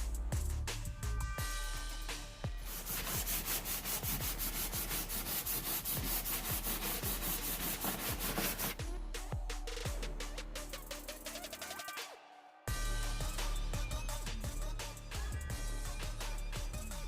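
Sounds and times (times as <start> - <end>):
music with kick-drum beat: 0.0 - 17.0
sandpaper rubbing back and forth: 2.6 - 8.8.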